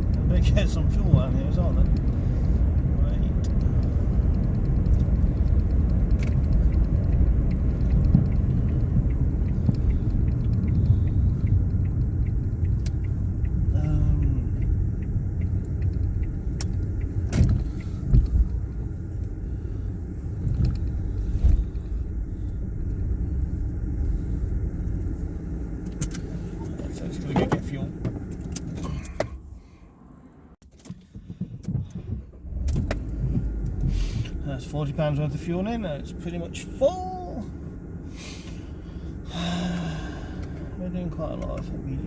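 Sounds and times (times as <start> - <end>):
car engine and road rumble: 0.0 - 42.0
quick even ticking: 0.6 - 26.6.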